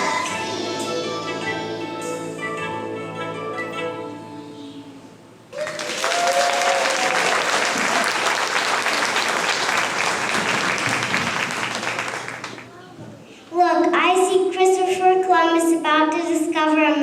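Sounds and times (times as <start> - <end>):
song with instrumental accompaniment: 0.0 - 4.8
audience applause: 5.5 - 12.7.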